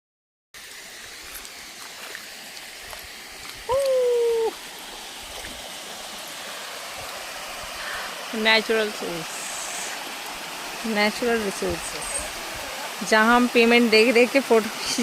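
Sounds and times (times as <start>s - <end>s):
waterfall rushing: 0.6s - 15.0s.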